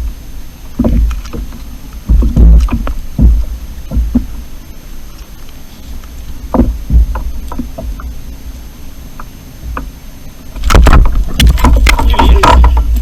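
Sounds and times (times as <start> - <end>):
loud clattering and rustling: 10.6 - 13.0.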